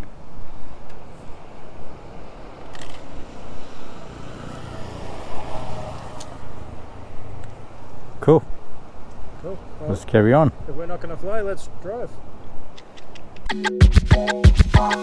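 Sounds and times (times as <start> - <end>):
vehicle engine passing: 3.1 - 7.9.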